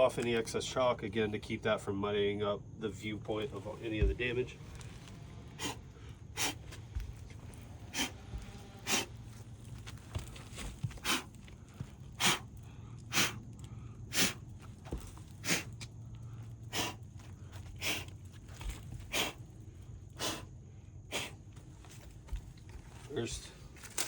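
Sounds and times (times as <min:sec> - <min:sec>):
sharp puffs of breath: 0:05.5 - 0:06.8, 0:07.8 - 0:09.1, 0:11.0 - 0:11.3, 0:12.2 - 0:14.5, 0:15.4 - 0:17.1, 0:17.7 - 0:18.2, 0:19.1 - 0:19.5, 0:20.1 - 0:20.5, 0:21.1 - 0:21.5.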